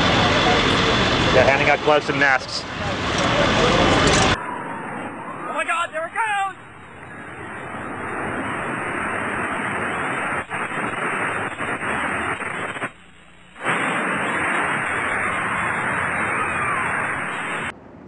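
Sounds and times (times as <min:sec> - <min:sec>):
building collapsing with rushing roar: 0:06.5 - 0:13.0, 0:13.6 - 0:17.7.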